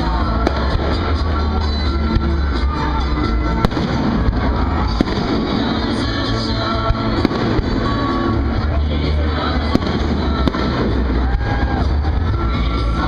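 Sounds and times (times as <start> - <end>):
loud music: 0.0 - 13.0
fireworks bangs: 3.5 - 8.7, 9.5 - 12.3.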